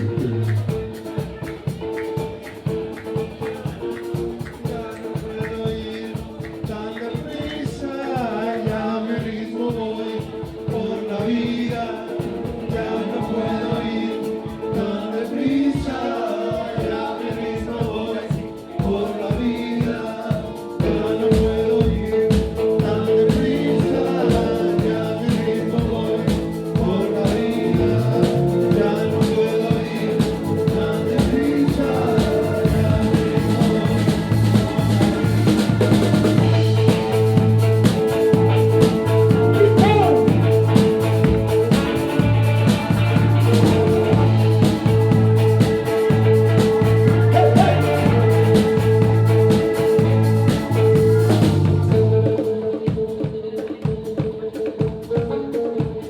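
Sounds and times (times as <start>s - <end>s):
organ chords: 0.0s - 4.6s, 18.4s - 52.3s
bongo and drum percussion: 0.0s - 56.0s.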